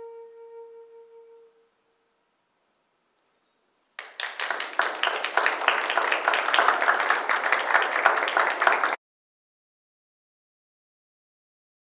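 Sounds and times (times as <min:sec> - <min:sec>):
audience applause: 0:04.0 - 0:09.0.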